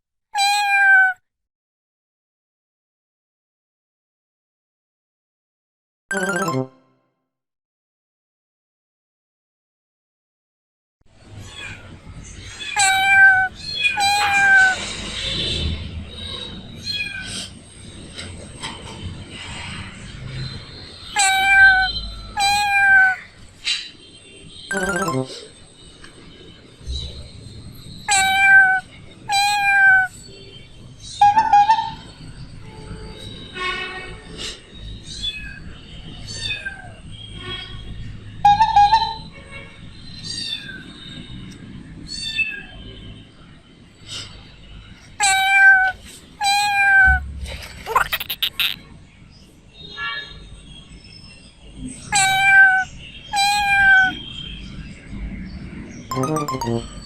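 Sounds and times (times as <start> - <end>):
cat meowing: 0.4 - 1.2, 12.7 - 14.8, 21.1 - 23.3, 28.1 - 30.1, 45.2 - 47.3, 47.9 - 48.8, 52.1 - 54.2.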